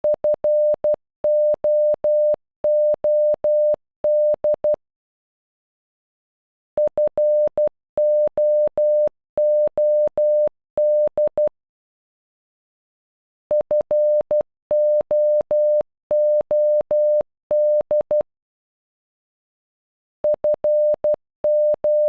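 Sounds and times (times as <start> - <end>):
morse code beeping tone: 20.3 - 22.0.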